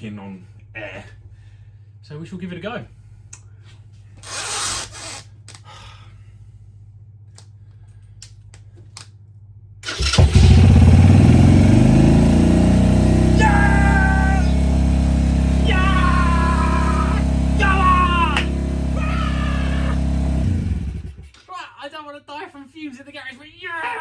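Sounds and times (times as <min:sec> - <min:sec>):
motorcycle engine starting and running: 0:09.8 - 0:21.3.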